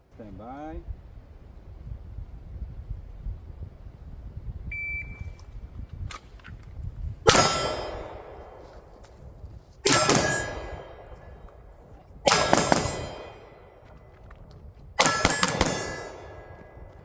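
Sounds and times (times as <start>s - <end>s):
metallic ringing of steel targets: 7.3s - 9.0s, 9.8s - 14.0s, 15.0s - 17.0s
pistol shots: 7.3s - 9.0s, 9.8s - 11.5s, 12.2s - 13.9s, 15.0s - 17.0s.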